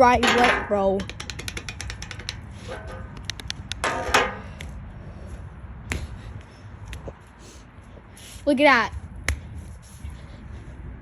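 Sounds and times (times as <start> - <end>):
handling clicks and knocks: 0.2 - 4.3.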